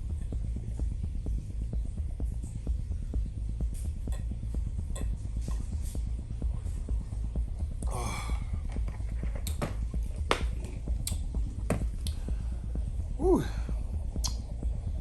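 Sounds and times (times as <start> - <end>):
low hum: 0.0 - 15.0.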